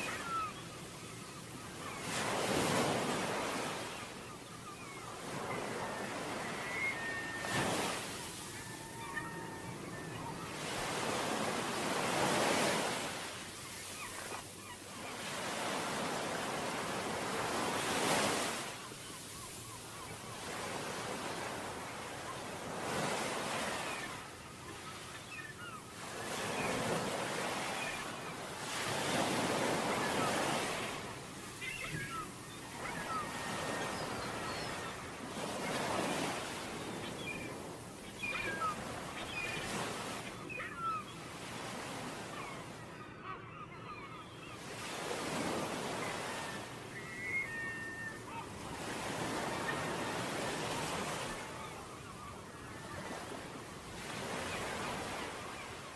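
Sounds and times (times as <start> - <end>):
ocean waves breaking: 0.0 - 42.8
short high bird calls: 4.5 - 11.6.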